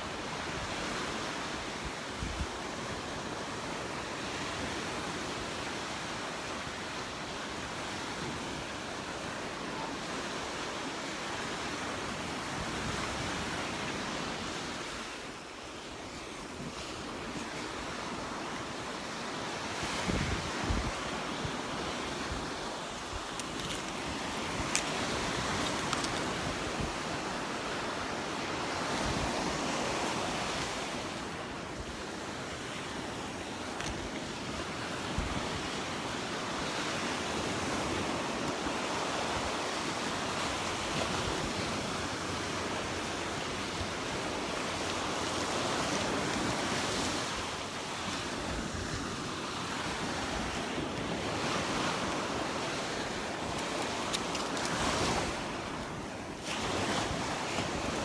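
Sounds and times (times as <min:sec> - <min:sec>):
surf washing onto beach: 0:00.0 - 0:58.0
wind buffeting microphone: 0:19.8 - 0:27.4.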